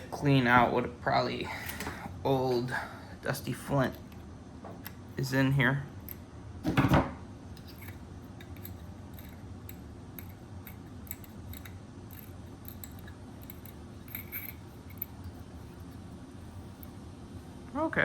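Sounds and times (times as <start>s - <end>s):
lighter metallic clicks and scrapes: 7.6s - 16.0s.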